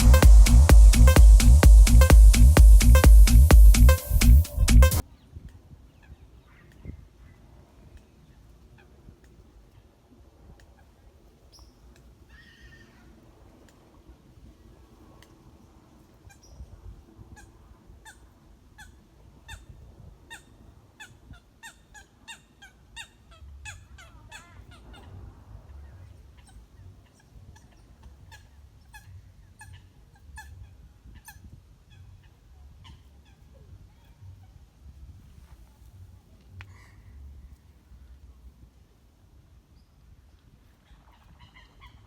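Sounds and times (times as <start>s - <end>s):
birds giving hiccup-like calls: 26.3s - 34.5s.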